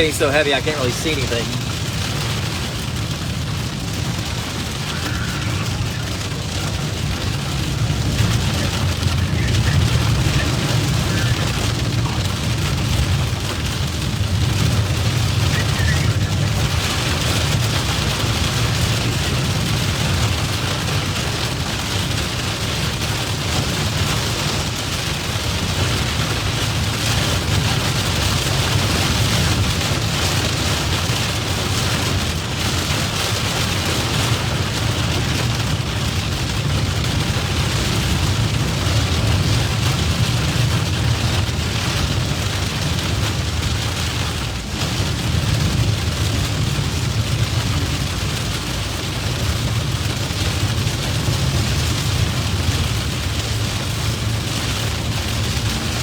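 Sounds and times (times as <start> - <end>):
heavy rain on a car: 0.0 - 56.0
road and engine rumble: 0.0 - 56.0.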